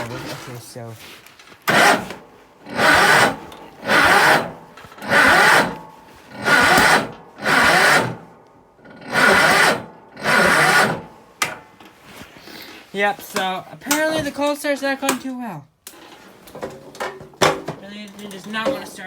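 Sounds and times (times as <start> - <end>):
small engine cranking: 1.6 - 11.6.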